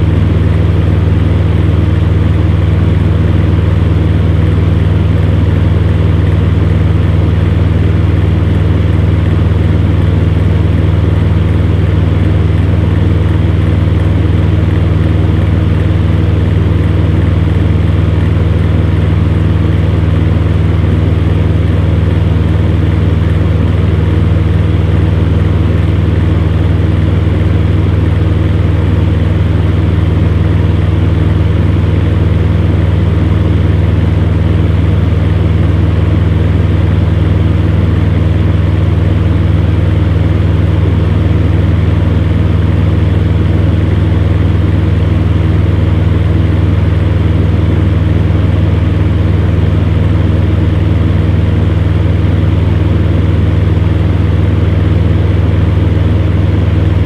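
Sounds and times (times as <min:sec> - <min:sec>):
fan heater humming and whirring: 0:00.0 - 0:57.0.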